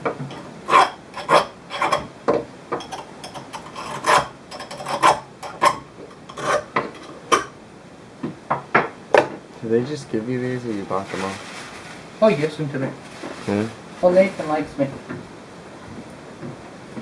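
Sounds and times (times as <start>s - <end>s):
glass edge rasping against abrasive: 3.6s - 6.7s.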